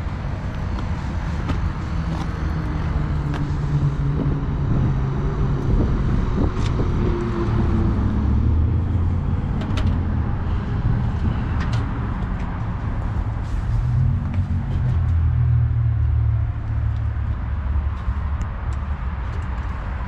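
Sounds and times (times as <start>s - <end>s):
car engine running: 0.0s - 5.0s.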